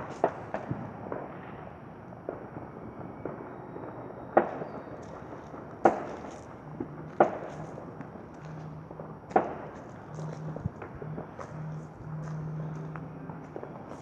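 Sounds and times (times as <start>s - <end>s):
distant fireworks and gunfire bangs: 0.0s - 14.0s.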